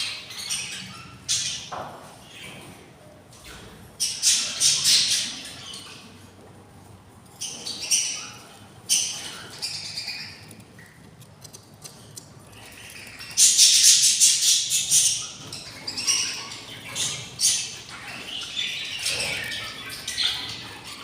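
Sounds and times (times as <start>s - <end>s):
budgerigar chatter: 12.6s - 21.0s.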